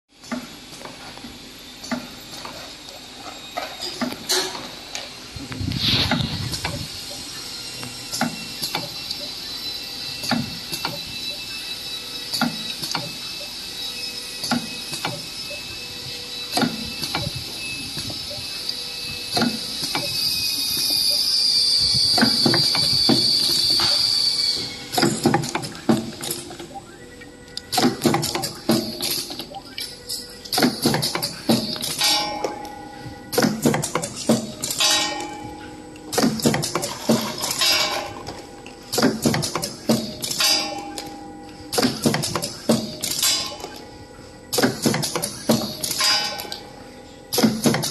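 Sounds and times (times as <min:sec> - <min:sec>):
machine clicks and knocks: 0:19.3 - 0:20.2, 0:24.9 - 0:26.8, 0:27.6 - 0:32.7, 0:33.3 - 0:35.4, 0:36.1 - 0:43.9, 0:44.5 - 0:46.7, 0:47.3 - 0:47.9.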